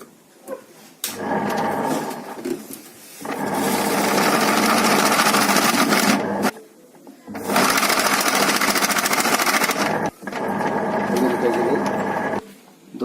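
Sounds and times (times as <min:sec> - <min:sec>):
washing machine motor running: 0:01.2 - 0:02.4, 0:03.2 - 0:06.5, 0:07.3 - 0:12.4.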